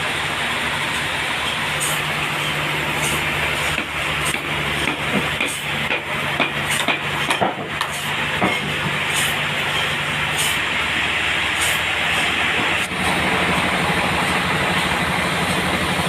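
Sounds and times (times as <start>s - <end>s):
sawmill engine hum: 0.0s - 16.0s
machinery knocks and clicks: 3.8s - 9.0s.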